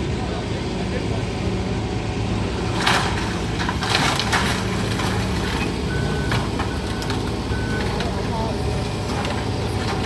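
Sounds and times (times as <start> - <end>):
diesel engine running: 0.0 - 10.0
debris clattering: 2.6 - 10.0.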